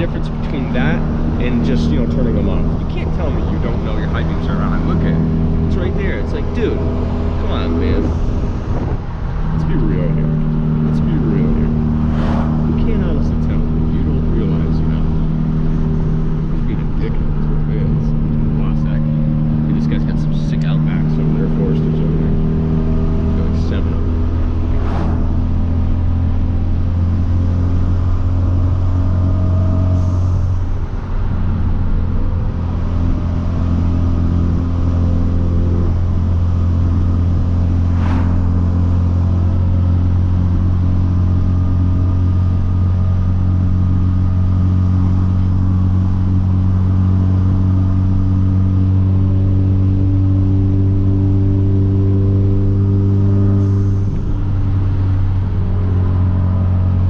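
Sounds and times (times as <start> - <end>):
car engine droning while cruising: 0.0 - 57.0.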